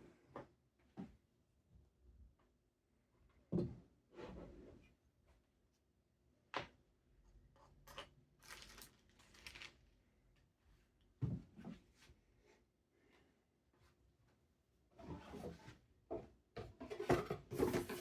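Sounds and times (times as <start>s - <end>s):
handling rustles and scrapes: 16.8s - 18.0s.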